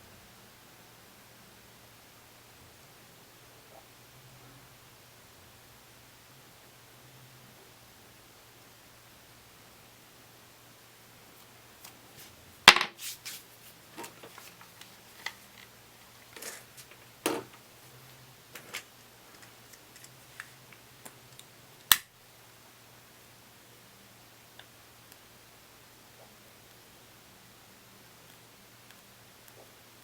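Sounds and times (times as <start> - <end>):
faint steady hum: 0.0 - 30.0
objects tapping and knocking: 12.7 - 13.0, 14.0 - 15.7, 16.3 - 17.6, 18.5 - 21.2.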